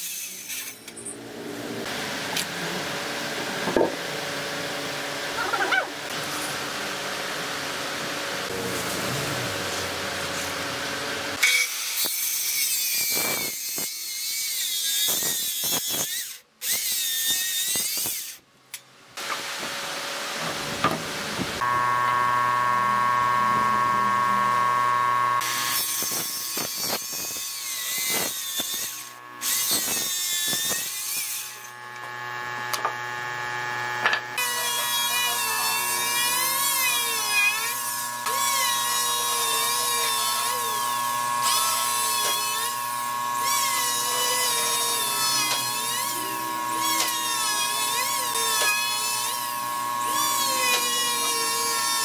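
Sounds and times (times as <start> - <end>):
power tools cutting wood: 0.0 - 18.4, 19.2 - 52.0
machine motor whining: 20.4 - 30.9.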